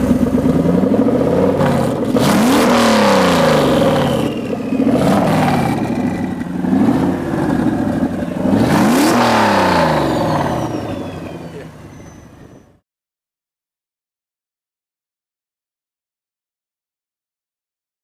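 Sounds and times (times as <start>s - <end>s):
car engine revving: 0.0s - 12.8s
turbo whistle: 3.4s - 6.4s, 9.0s - 12.8s.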